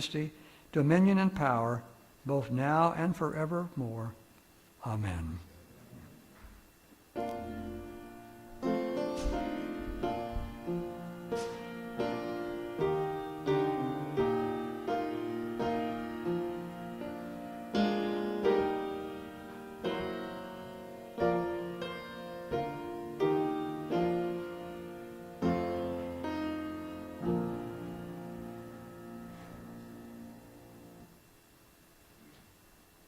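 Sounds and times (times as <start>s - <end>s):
piano chords ringing: 7.1s - 31.6s.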